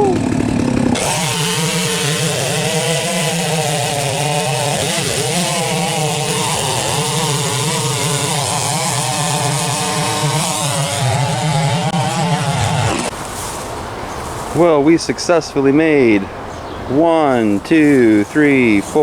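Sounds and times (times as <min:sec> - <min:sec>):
chainsaw cutting a log: 0:00.0 - 0:13.2.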